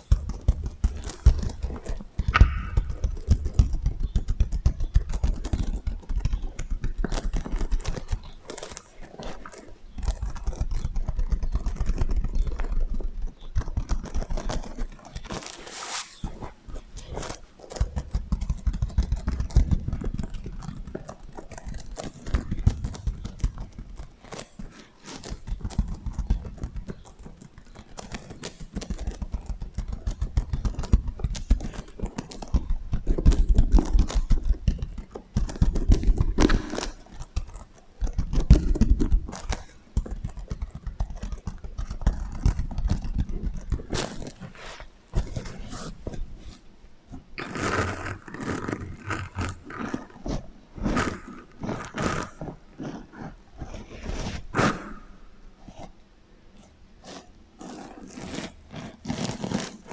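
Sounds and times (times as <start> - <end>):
tapping and scratching on sequins: 0.0 - 59.9.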